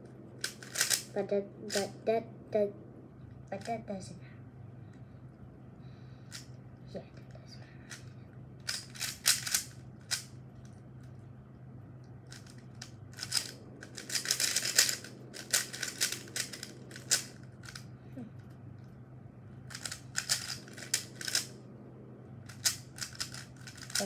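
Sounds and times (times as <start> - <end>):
puzzle cube clicking: 0.4 - 1.9, 7.9 - 10.3, 12.3 - 17.9, 19.7 - 21.5, 22.5 - 24.0.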